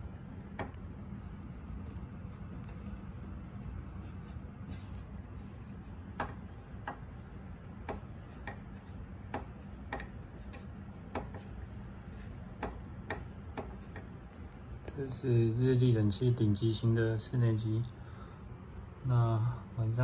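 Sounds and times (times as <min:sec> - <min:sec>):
air conditioner clicking: 0:00.0 - 0:15.1
steady low hum: 0:00.0 - 0:20.0.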